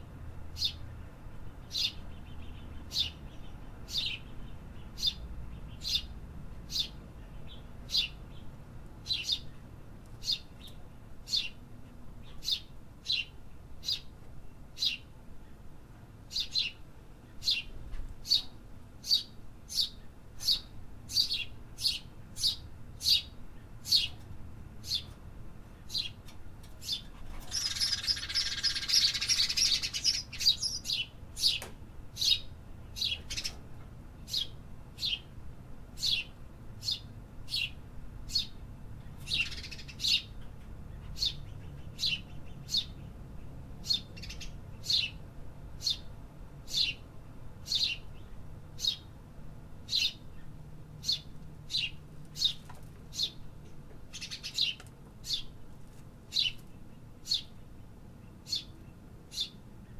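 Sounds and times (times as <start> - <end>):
bird chirping: 0.5 - 14.1, 14.8 - 15.6, 16.3 - 24.2, 24.8 - 33.6, 34.2 - 35.3, 36.0 - 49.1, 49.8 - 55.6, 56.3 - 59.9
dense bird twittering: 26.8 - 31.6, 36.0 - 45.2, 47.6 - 49.1, 58.2 - 59.9.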